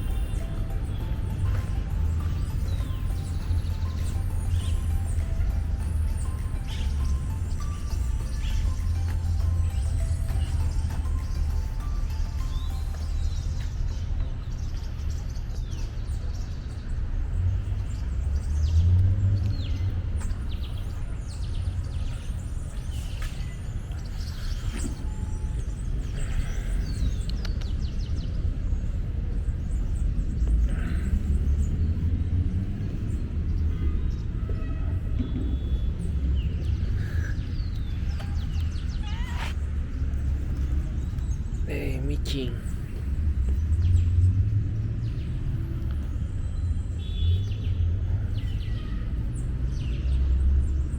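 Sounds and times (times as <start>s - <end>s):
steady low rumble: 0.0s - 18.0s.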